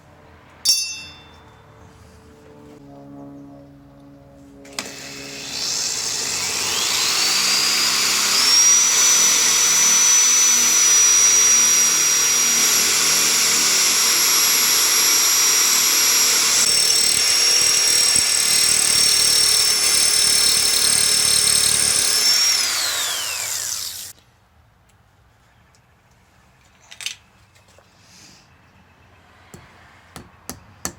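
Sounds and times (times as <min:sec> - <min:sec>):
electric drill motor whine: 0:04.7 - 0:24.1.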